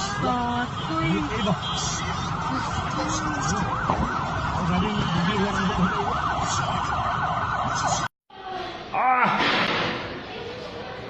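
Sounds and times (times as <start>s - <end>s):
emergency siren yelping: 0.0s - 8.1s
steady background noise: 0.0s - 11.0s.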